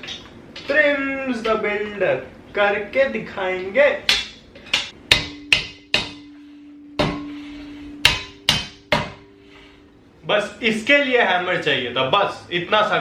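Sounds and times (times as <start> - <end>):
hammer blows on chair part: 4.1 - 9.5
low ringing: 4.1 - 10.2.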